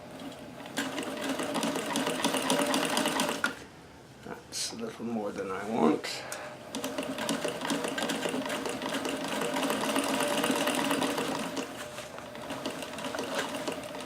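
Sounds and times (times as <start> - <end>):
sewing machine clattering: 0.2 - 3.6, 6.7 - 11.7, 12.4 - 14.0.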